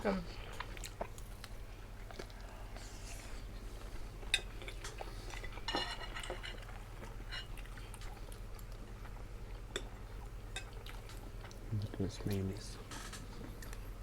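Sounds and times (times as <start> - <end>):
cutlery clinking on plates: 4.3 - 6.7.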